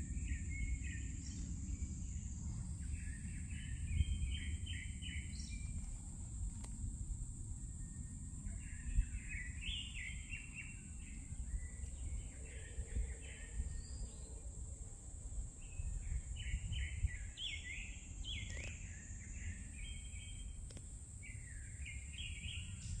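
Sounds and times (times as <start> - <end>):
steady low rumble: 0.0 - 10.1
constant high hiss: 0.0 - 23.0
songbird singing: 0.0 - 23.0.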